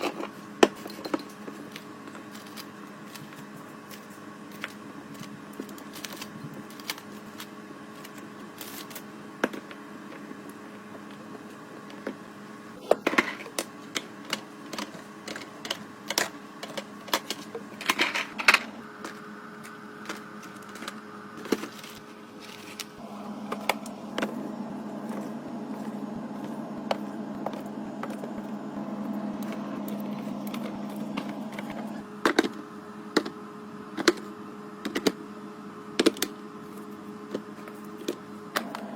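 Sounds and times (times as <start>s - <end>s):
steady low hum: 9.8s - 38.9s
steadier noise: 23.0s - 32.0s.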